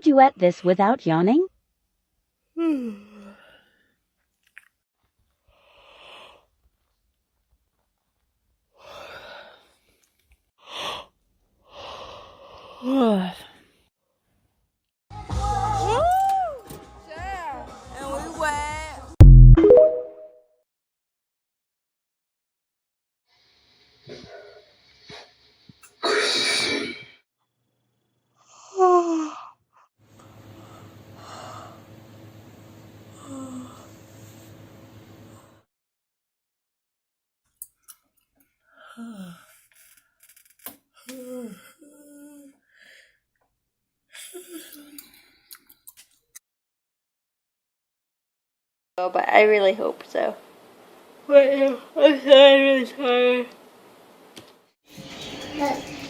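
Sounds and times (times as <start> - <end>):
person yawning: 2.6 - 3.4
faint breathing: 33.1 - 35.6.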